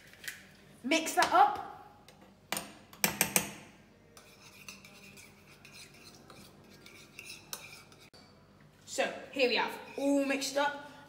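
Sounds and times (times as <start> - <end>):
utensil scraping thick dressing: 4.2 - 8.1.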